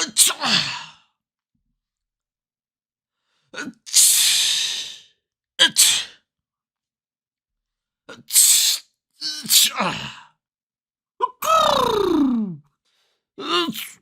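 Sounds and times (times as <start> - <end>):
person sneezing: 0.0 - 0.9, 3.6 - 4.8, 5.6 - 6.2, 8.2 - 8.8.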